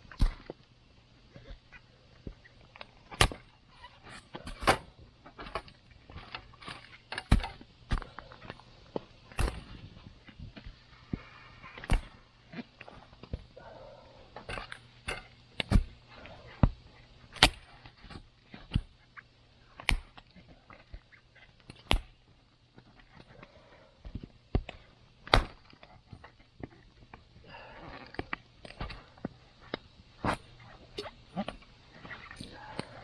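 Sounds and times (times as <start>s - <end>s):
faint steady hiss: 0.0s - 33.0s
campfire crackling and popping: 17.3s - 23.0s.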